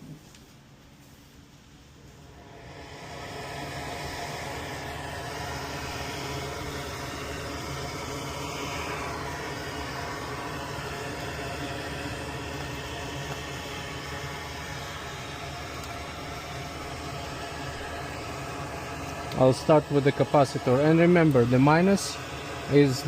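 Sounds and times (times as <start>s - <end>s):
desoldering tool whirring: 2.1s - 23.0s.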